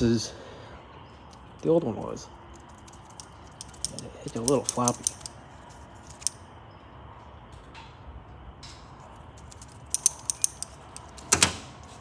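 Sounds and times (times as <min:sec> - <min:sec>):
sharp clicks of hard parts: 0:02.5 - 0:05.4, 0:06.0 - 0:06.4, 0:09.4 - 0:12.0.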